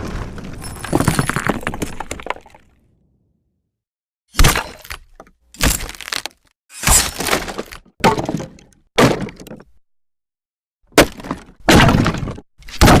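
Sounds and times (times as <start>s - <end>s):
debris crashing and falling: 0.0s - 2.8s.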